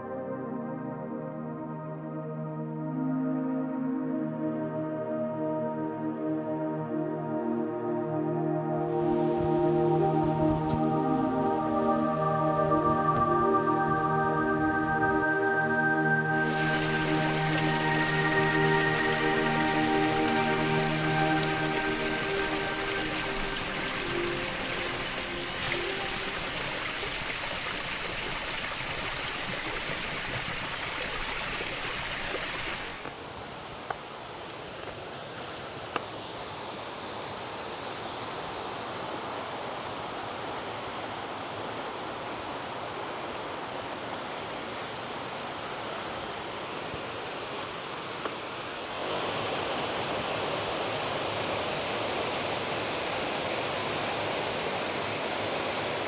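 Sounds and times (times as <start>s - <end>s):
faint high steady tone: 0.0s - 30.2s
waterfall rushing: 0.0s - 33.0s, 48.9s - 56.0s.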